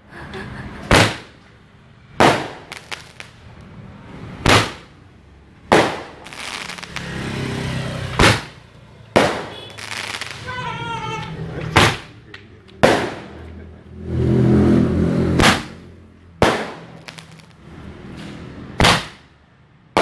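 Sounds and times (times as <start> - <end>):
fireworks banging: 0.8 - 13.7, 15.2 - 20.0
small fireworks crackles: 2.2 - 3.8, 5.7 - 12.1, 16.4 - 17.8.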